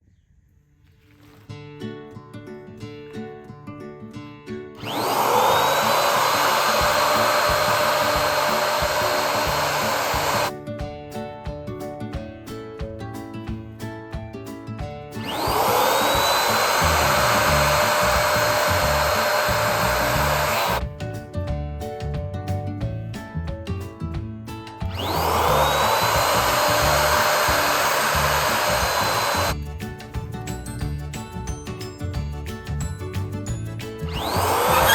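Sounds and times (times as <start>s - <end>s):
balloon inflator motor whine: 4.8s - 10.5s, 15.2s - 20.8s, 24.9s - 29.6s, 34.1s - 34.9s
background music with a beat: 6.9s - 34.9s.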